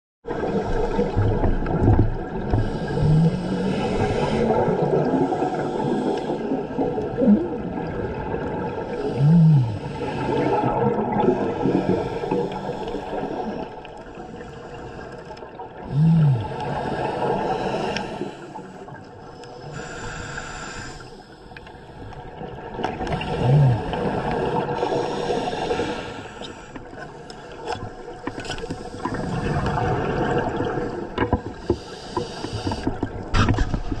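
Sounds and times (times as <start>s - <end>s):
exhaled bubbles underwater: 0.3s - 34.0s
regulator inhalation hiss: 19.6s - 22.1s, 31.8s - 32.9s.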